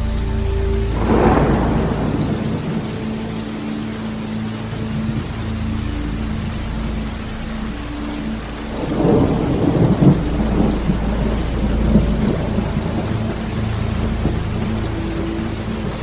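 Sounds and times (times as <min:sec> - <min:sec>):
rain falling: 0:00.0 - 0:16.0
thunder rolling: 0:00.9 - 0:03.6, 0:08.7 - 0:14.9.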